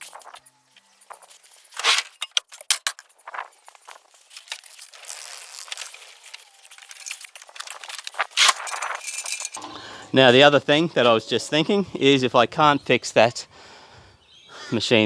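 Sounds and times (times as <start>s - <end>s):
objects clicking and clinking: 0.0s - 9.6s
rustling: 0.0s - 9.6s.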